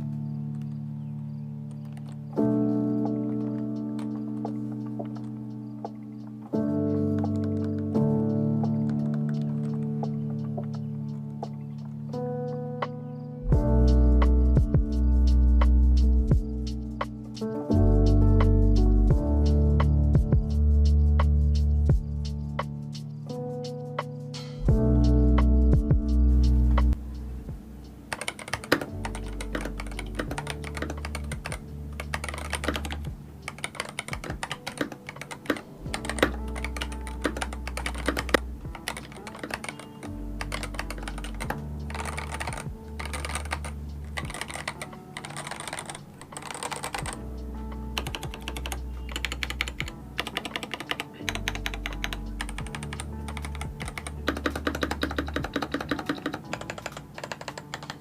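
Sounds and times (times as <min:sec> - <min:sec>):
lofi background music: 0:00.0 - 0:58.0
mechanical keyboard typing: 0:03.1 - 0:05.5, 0:06.5 - 0:10.8, 0:28.1 - 0:58.0.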